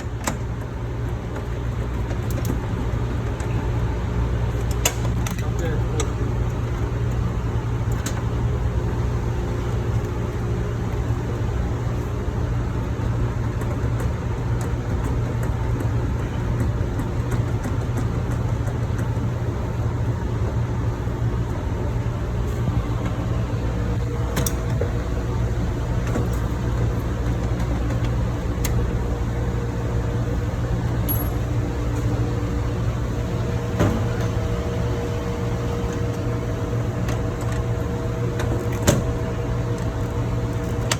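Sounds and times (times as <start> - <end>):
engine room machinery drone: 0.0 - 40.9
faint hum tone: 22.5 - 40.9.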